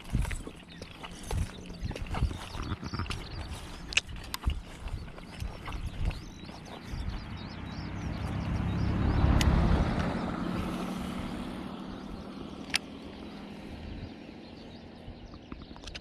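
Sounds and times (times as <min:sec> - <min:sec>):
motor vehicle passing: 0:00.0 - 0:15.8
steady low hum: 0:00.0 - 0:15.8
sharp clicks: 0:02.2 - 0:04.7, 0:09.3 - 0:10.2, 0:12.6 - 0:13.0.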